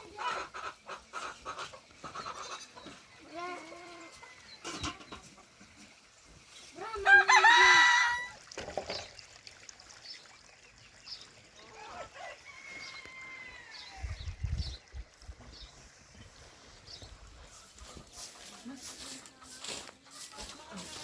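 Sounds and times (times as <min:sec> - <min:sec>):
rooster crowing: 0:07.0 - 0:08.4, 0:12.2 - 0:14.1
distant rooster crowing: 0:07.1 - 0:08.4, 0:12.2 - 0:14.2.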